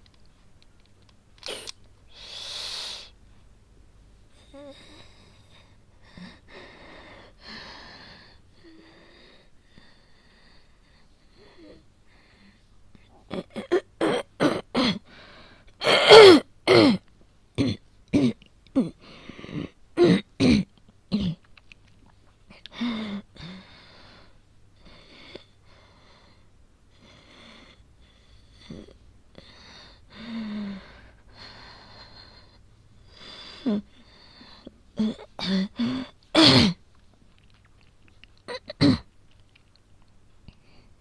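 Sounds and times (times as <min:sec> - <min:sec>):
wheezing breaths: 0:01.4 - 0:03.2, 0:22.7 - 0:36.2
woman coughing: 0:15.8 - 0:17.0, 0:36.4 - 0:36.8.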